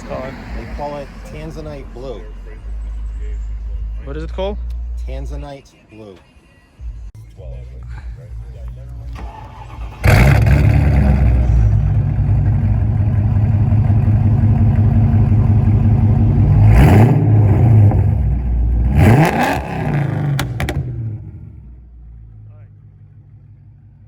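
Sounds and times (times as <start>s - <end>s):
car engine revving: 0.0s - 5.0s, 8.4s - 24.0s
car engine idling loudly: 8.9s - 19.0s.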